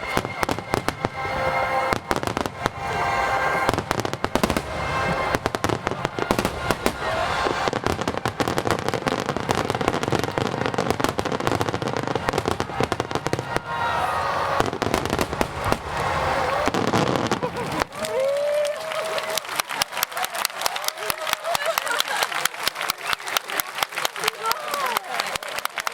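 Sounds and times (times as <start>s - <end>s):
music playing: 0.0s - 17.9s
fireworks bangs and crackling: 0.0s - 18.6s.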